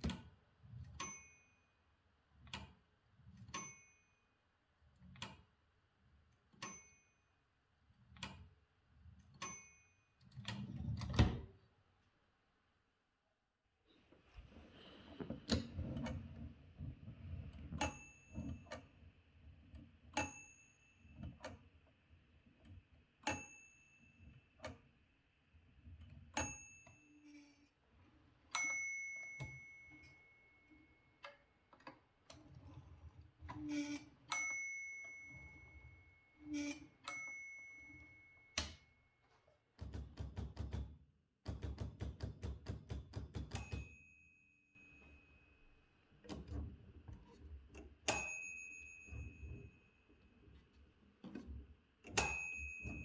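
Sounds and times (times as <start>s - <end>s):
typewriter bell ringing: 28.6s - 30.7s, 33.8s - 38.6s, 48.1s - 49.8s, 52.1s - 53.0s.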